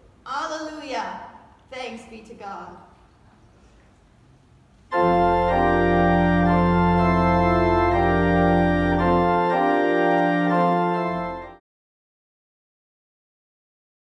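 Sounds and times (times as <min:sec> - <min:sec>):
church organ chords: 0:04.9 - 0:11.6
deep organ pedal bass: 0:04.9 - 0:11.6.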